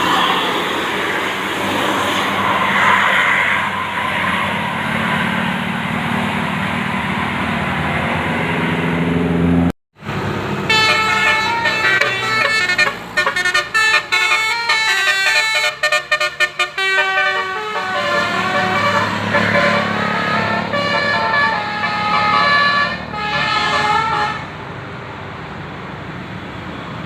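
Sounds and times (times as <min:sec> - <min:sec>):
bus engine: 0:00.0 - 0:27.0
road noise: 0:00.0 - 0:27.0
multi-tone bus horn tune: 0:10.5 - 0:24.6.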